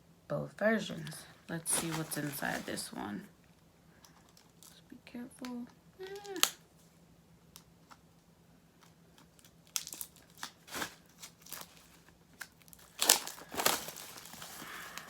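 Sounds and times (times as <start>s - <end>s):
plastic shrink-wrap tearing: 1.5s - 3.1s, 6.0s - 6.6s, 9.2s - 15.0s.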